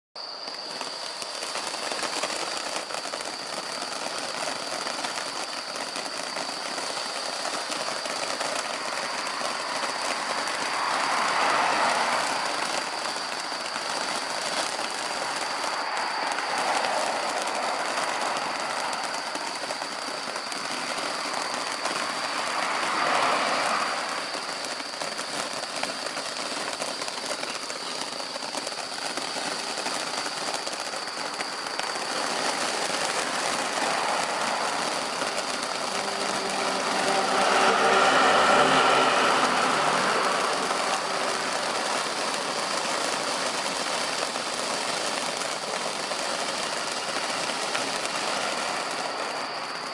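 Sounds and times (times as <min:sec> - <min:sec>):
fireworks fountains hissing: 0:00.2 - 0:49.9.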